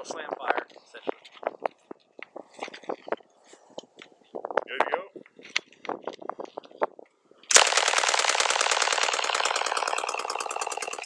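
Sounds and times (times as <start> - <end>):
submachine gun full-auto burst: 7.5 - 11.0.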